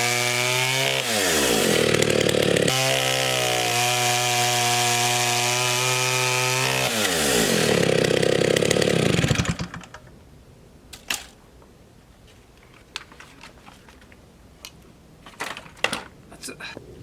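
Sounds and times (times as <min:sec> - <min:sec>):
chainsaw engine idling: 0:01.6 - 0:03.6, 0:07.5 - 0:09.9.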